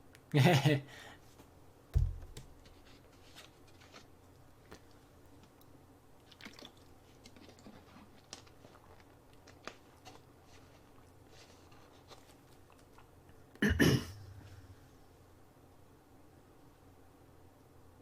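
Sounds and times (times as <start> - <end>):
small clicks and crunches: 2.3 - 13.4
low hum: 13.7 - 15.6.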